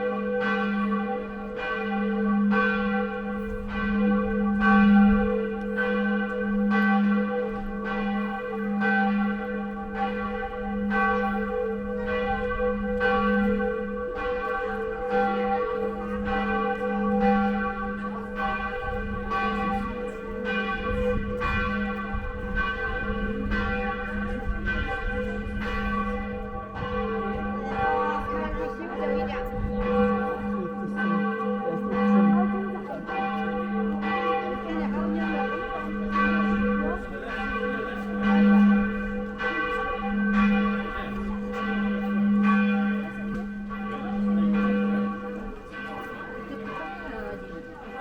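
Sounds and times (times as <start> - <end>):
large church bell tolling: 0.0 - 48.0.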